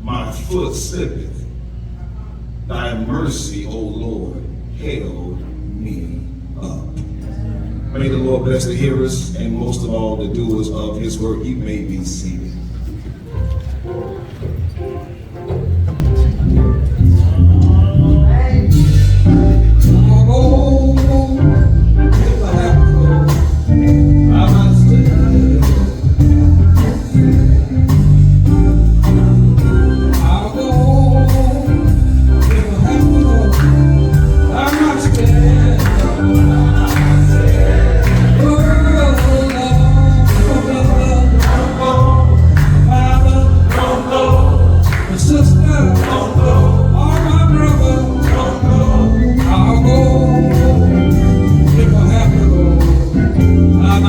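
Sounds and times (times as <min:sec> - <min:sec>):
heavy bass line: 0:15.6 - 0:54.0
steady drum beat: 0:15.6 - 0:54.0
gospel singing with band: 0:16.0 - 0:54.0.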